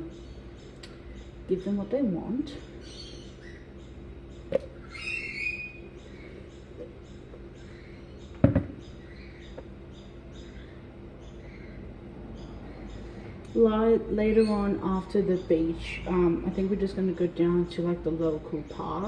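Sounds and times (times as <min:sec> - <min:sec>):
faint steady hum: 0:00.0 - 0:19.0
soft high chirps: 0:02.8 - 0:11.5
utensil knocks and clicks: 0:08.4 - 0:08.8.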